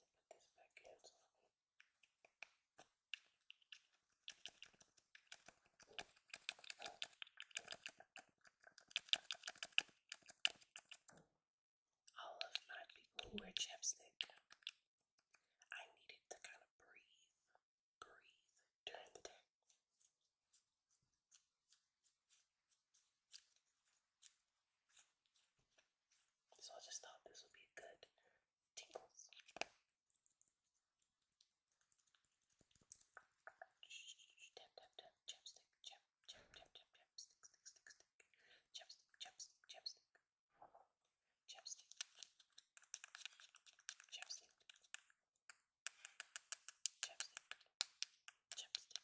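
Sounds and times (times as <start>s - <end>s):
crisp clicks and taps of tube: 12.1s - 15.7s, 28.8s - 33.9s, 41.5s - 49.0s
chapstick tube clicking: 41.6s - 49.0s.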